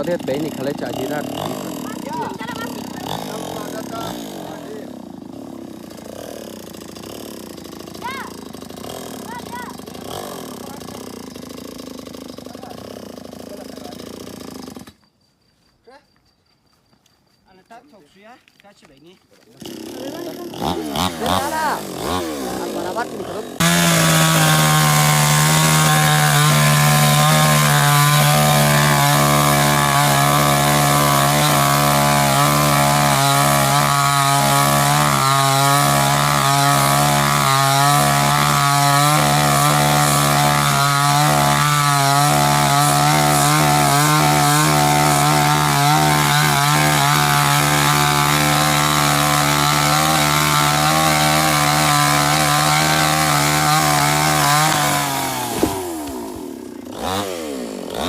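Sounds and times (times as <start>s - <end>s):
chainsaw cutting wood: 0.0s - 15.0s, 19.4s - 58.0s.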